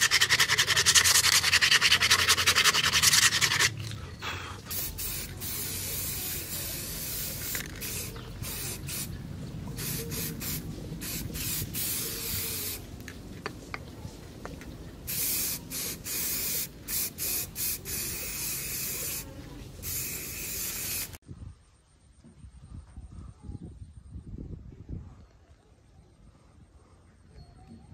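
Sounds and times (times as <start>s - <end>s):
hissing spray: 4.6s - 13.0s, 15.1s - 21.2s.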